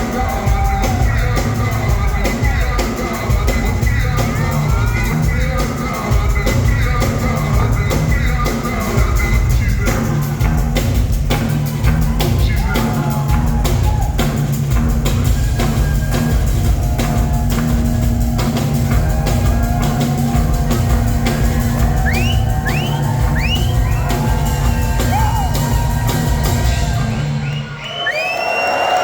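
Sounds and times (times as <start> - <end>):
live rock band playing: 0.0 - 27.8
crowd cheering: 0.0 - 29.0
piercing whistle from audience: 15.2 - 17.6, 21.4 - 29.0.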